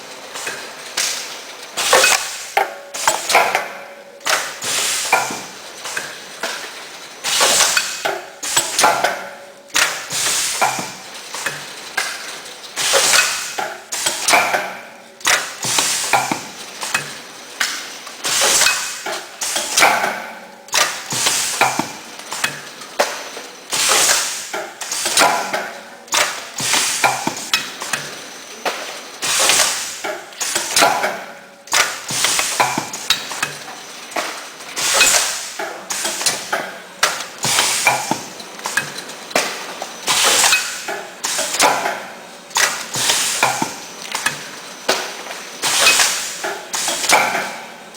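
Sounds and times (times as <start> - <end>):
packaging machine clattering: 20.7 - 47.9.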